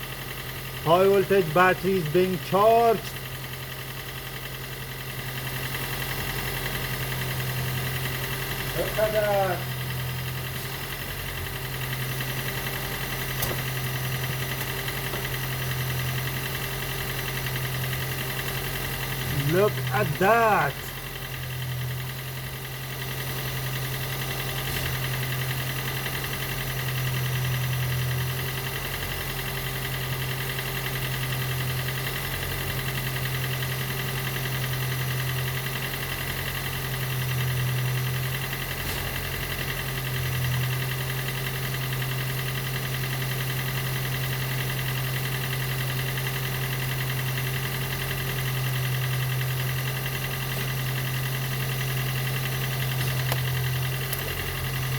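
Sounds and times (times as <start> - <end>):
car engine running: 0.0 - 54.9.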